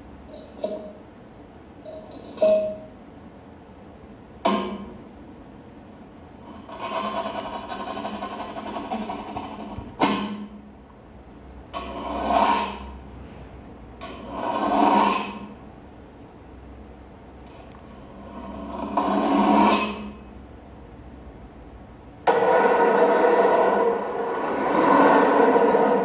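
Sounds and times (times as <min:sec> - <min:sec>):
rasping scraping noises: 0:12.0 - 0:12.9, 0:14.2 - 0:15.5.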